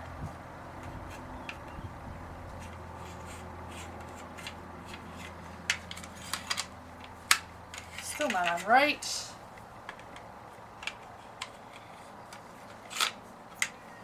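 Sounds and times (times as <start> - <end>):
pistol slide scraping and clicking: 2.6 - 8.6, 9.8 - 13.8.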